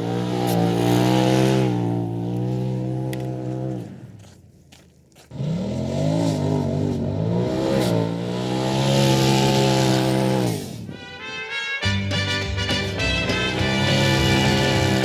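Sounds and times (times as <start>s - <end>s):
off-road vehicle engine revving: 0.0s - 4.4s, 5.2s - 11.1s, 12.0s - 15.0s.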